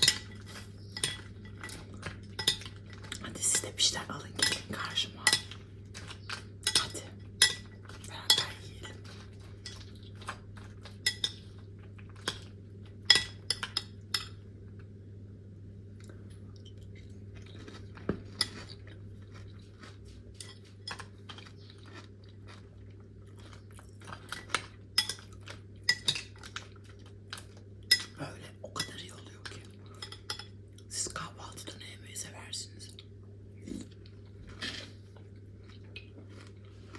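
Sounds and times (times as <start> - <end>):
steady low hum: 0.0 - 36.9
spoon clinking against bowl: 6.3 - 8.6
crunchy chewing: 16.0 - 27.8, 32.9 - 36.9.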